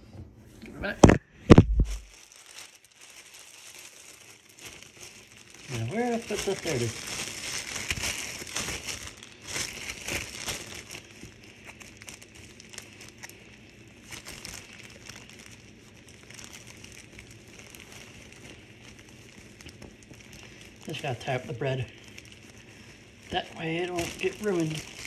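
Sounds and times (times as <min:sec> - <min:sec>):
plastic bag crinkling: 0:01.5 - 0:25.0.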